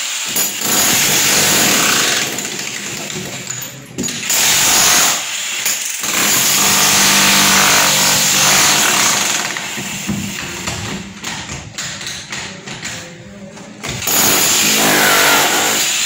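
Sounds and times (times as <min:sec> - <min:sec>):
power tool on masonry: 0:00.0 - 0:10.8, 0:14.0 - 0:16.0
quiet work noise: 0:05.2 - 0:16.0.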